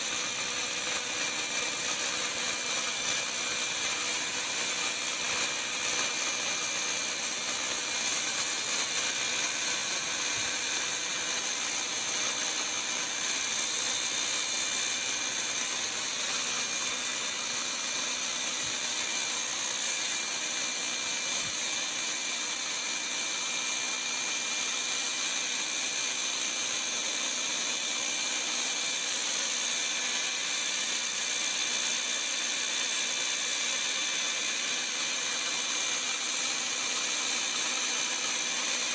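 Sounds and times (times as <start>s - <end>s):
rotary hammer whirring with rattle: 0.0s - 38.9s.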